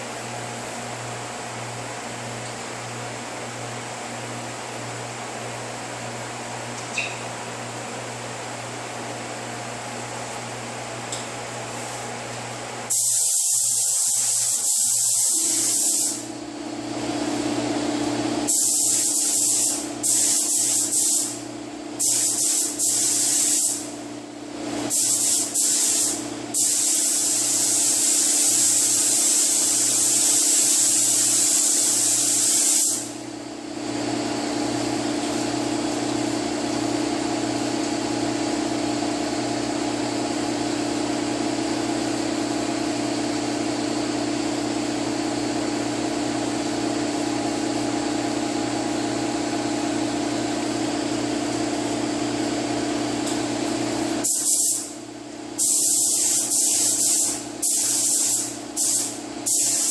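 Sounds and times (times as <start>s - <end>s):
steady fan hum: 0.0s - 59.9s
paint spray gun hissing: 12.9s - 16.3s, 18.5s - 21.4s, 22.0s - 23.9s, 24.9s - 33.1s, 54.2s - 55.0s, 55.6s - 59.9s.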